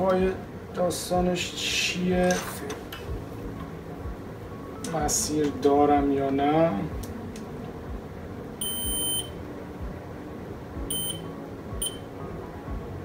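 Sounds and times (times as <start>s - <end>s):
multimeter continuity beep: 8.6s - 9.4s, 10.9s - 12.1s.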